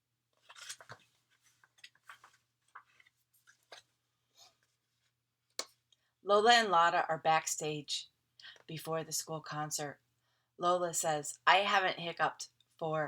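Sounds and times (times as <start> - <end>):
picture book pages turning: 0.3 - 5.1.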